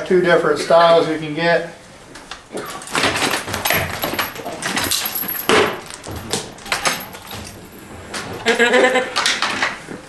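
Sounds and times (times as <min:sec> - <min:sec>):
small metal clinks and rattles: 0:02.5 - 0:09.0
handling rustle: 0:02.6 - 0:08.4.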